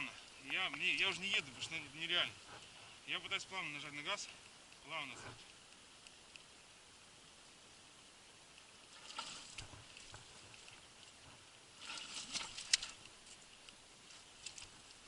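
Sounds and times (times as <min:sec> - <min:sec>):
wet mud squelching and splashing: 0:11.8 - 0:13.0.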